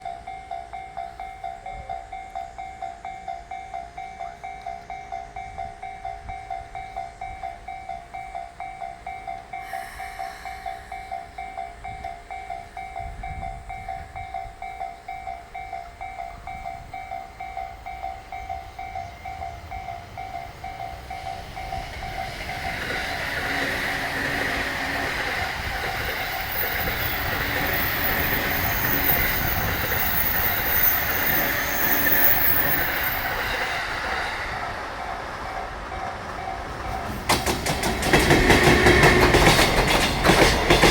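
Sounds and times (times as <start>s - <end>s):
freight train passing: 0.0s - 40.9s
level-crossing alarm dinging: 0.0s - 40.9s
train wheels clattering over rail joints: 35.6s - 40.9s.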